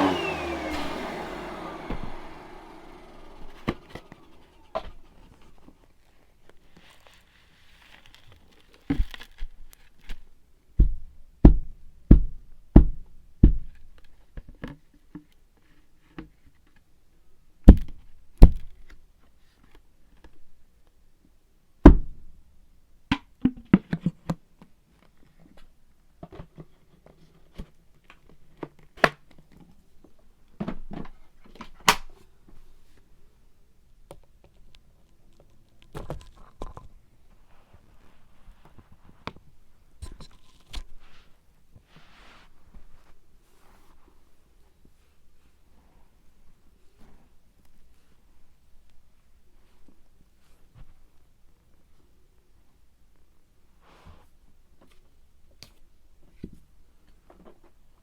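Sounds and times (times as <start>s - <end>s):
quiet rustling: 0.6s - 10.2s, 34.5s - 58.0s.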